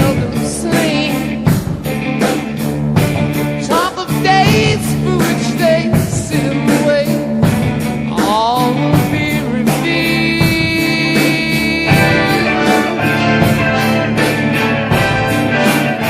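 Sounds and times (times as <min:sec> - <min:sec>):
rock music with singing: 0:00.0 - 0:16.0.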